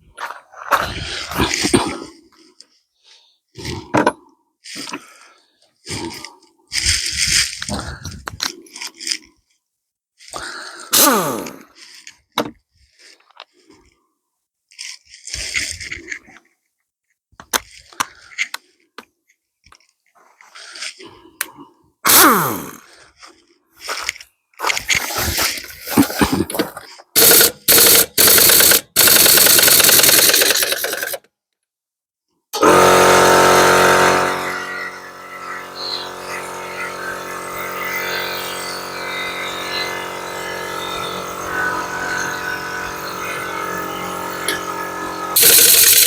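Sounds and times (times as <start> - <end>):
air compressor running: 10.9 - 11.6, 22.1 - 22.8, 24.9 - 31.2, 32.6 - 46.0
pneumatic impact wrench bursts: 10.9 - 11.6, 22.1 - 22.8, 24.7 - 31.2, 32.6 - 46.0.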